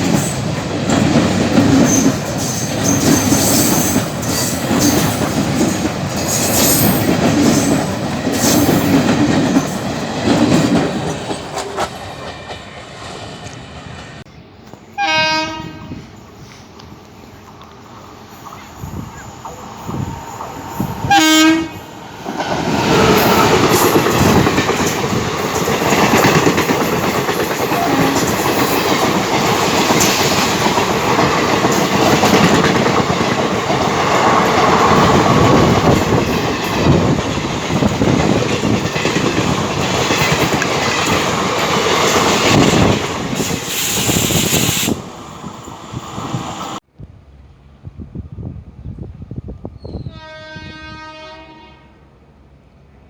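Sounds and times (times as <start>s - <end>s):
train wheels clattering: 0.0s - 14.9s, 17.5s - 46.8s
locomotive horn blast: 15.0s - 16.0s, 21.0s - 21.9s, 50.0s - 52.0s.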